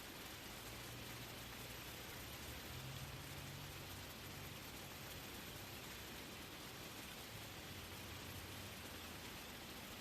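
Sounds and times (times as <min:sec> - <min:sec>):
waterfall hiss: 0:00.0 - 0:10.0.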